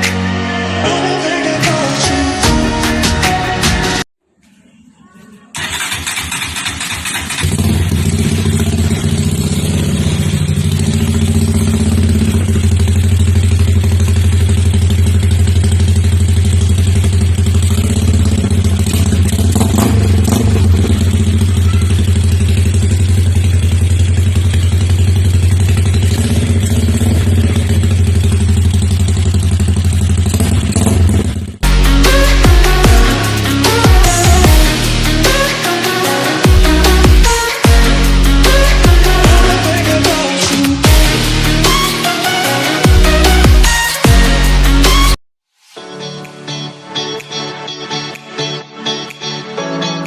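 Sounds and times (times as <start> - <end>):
motorcycle engine idling: 5.6 - 33.1.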